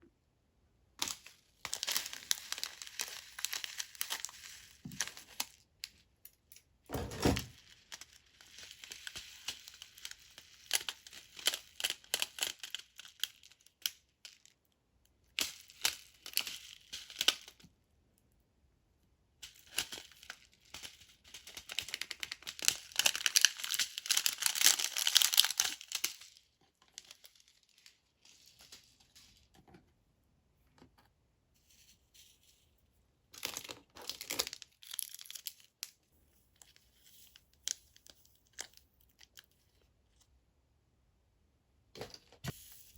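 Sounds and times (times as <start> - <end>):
packaging crinkling and rustling: 1.1 - 5.6, 6.9 - 14.4, 19.5 - 29.5, 33.4 - 35.8.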